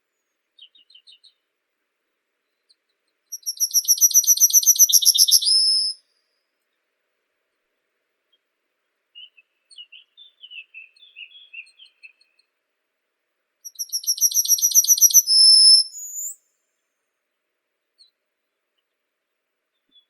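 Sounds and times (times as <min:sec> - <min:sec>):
songbird singing: 0:00.0 - 0:01.6, 0:02.3 - 0:06.9, 0:07.5 - 0:12.6, 0:13.6 - 0:20.0.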